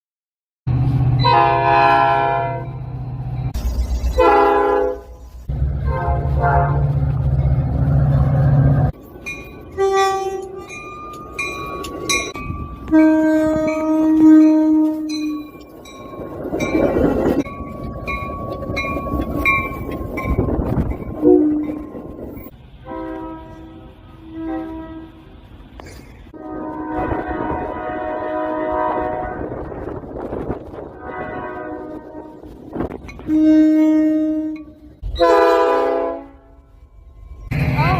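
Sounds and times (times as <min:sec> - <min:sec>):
low train rumble: 0:00.7 - 0:37.9
train horn blasts: 0:01.2 - 0:02.8, 0:04.2 - 0:05.2, 0:05.8 - 0:07.0, 0:09.7 - 0:10.8, 0:12.8 - 0:15.6, 0:21.2 - 0:22.0, 0:22.8 - 0:25.3, 0:26.3 - 0:30.0, 0:30.9 - 0:36.7.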